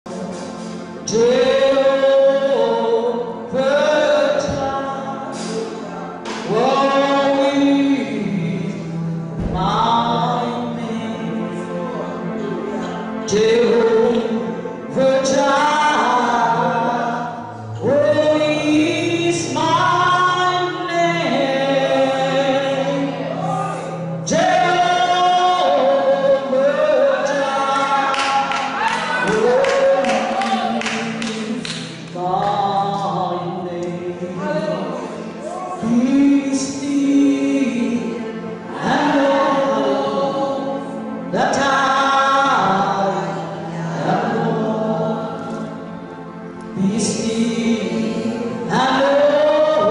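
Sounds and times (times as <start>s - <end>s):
choir singing gospel: 0.0s - 49.9s.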